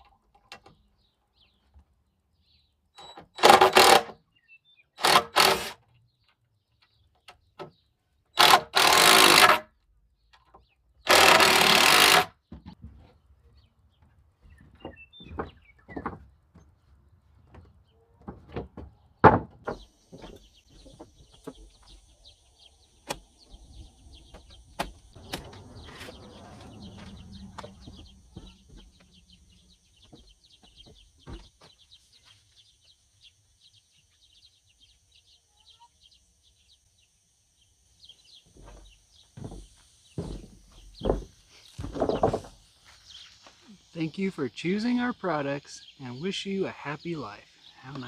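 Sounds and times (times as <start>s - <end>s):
small birds chirping: 0.0s - 3.4s, 4.2s - 48.0s
wooden knocks of lumber handling: 14.0s - 16.8s, 17.4s - 21.9s, 38.5s - 43.0s.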